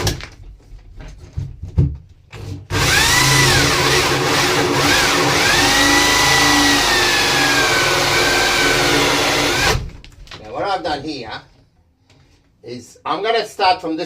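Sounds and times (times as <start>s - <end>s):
power drill boring into door: 2.7s - 9.8s.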